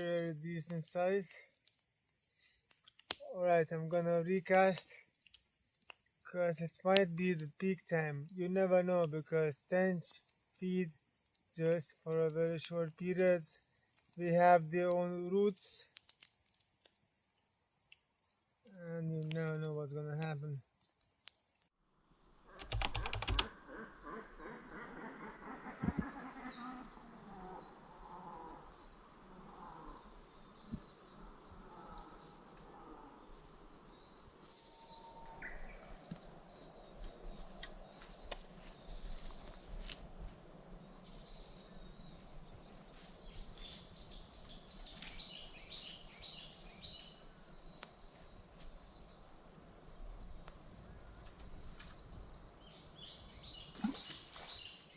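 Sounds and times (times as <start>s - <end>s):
high insect hum: 0.0s - 21.6s, 23.2s - 54.9s
small birds chirping: 22.9s - 54.9s.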